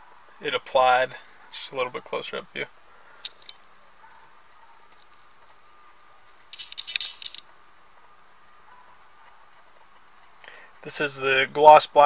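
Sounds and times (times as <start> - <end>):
faint high-pitched whine: 0.0 - 12.0
light metallic clicks jingling: 6.5 - 7.5.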